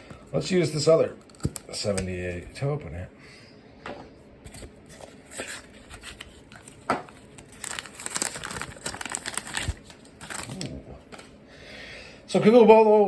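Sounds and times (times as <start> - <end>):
packaging crinkling: 4.5 - 11.3.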